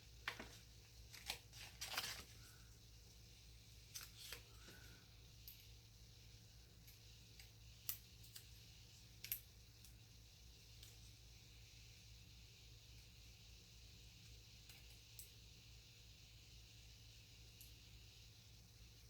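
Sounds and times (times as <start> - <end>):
paper pieces clicking and rustling: 0.3 - 2.3.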